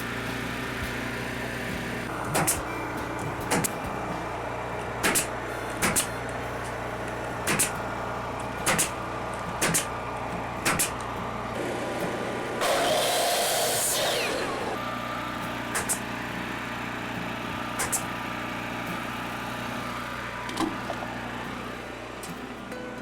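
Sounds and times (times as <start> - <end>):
hammer driving nails into wood: 5.0 - 6.2, 7.5 - 7.8, 8.6 - 9.0, 9.6 - 9.9, 10.6 - 11.0, 15.8 - 16.0, 17.8 - 18.1.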